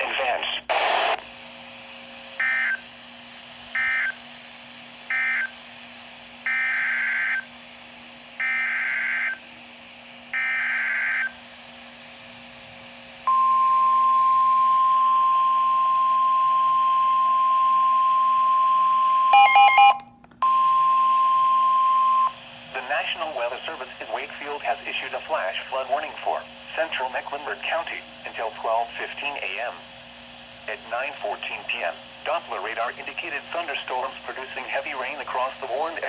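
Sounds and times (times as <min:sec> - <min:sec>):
data burst squawks: 0:19.4 - 0:20.0
high-pitched alert tone: 0:19.4 - 0:20.0.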